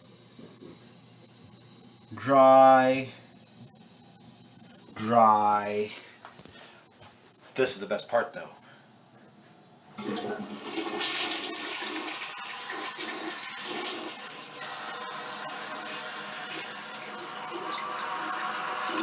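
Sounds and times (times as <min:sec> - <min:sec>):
toilet flushing: 0:10.0 - 0:19.0.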